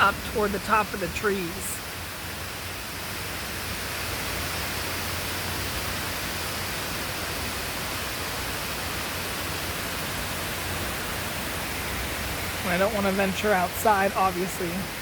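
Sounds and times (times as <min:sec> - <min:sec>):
heavy rain: 0:00.0 - 0:15.0
wind: 0:00.0 - 0:15.0.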